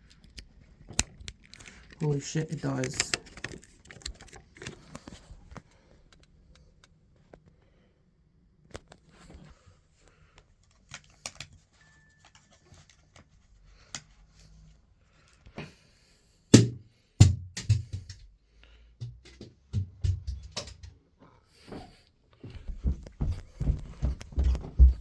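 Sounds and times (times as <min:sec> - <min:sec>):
heavy uneven thumps: 0:22.5 - 0:25.0.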